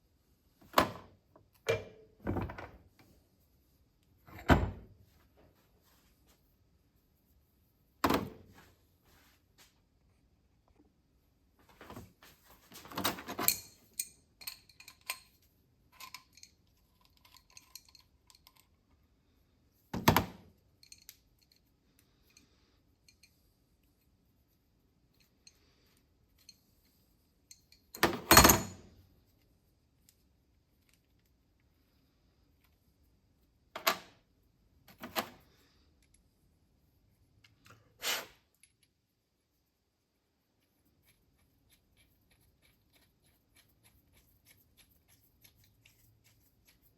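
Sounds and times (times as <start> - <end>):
small metallic clicks and clinks: 13.3 - 19.0, 20.7 - 24.0, 25.1 - 28.6.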